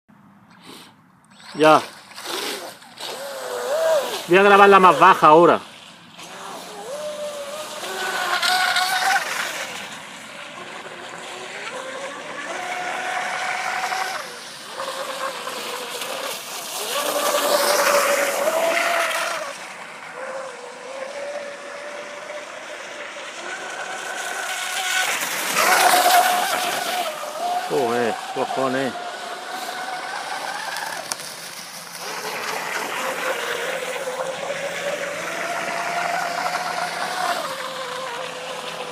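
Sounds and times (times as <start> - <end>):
speedboat engine whining: 0.6 - 38.9.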